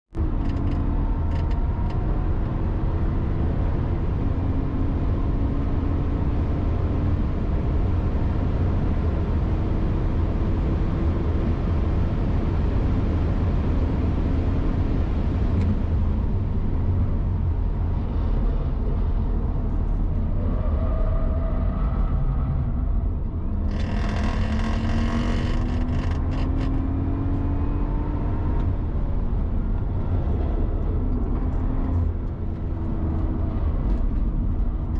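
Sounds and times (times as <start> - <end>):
car engine accelerating: 23.5 - 34.9.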